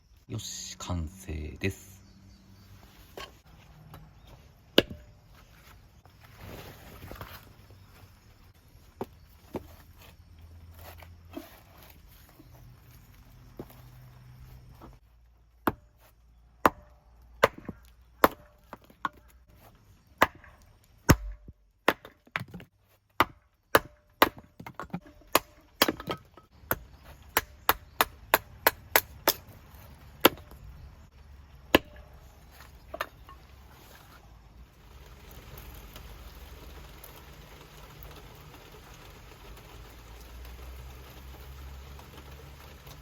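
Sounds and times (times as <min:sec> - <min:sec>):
blade chopping into wood: 0:04.8 - 0:05.1, 0:16.6 - 0:19.2, 0:20.2 - 0:22.6, 0:23.2 - 0:29.6, 0:31.7 - 0:32.1.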